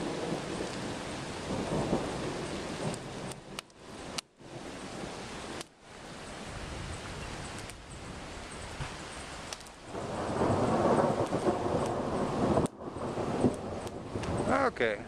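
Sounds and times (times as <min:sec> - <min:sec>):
thunder rumbling: 0:00.0 - 0:05.6, 0:09.8 - 0:15.0
steady rain falling: 0:00.0 - 0:15.0.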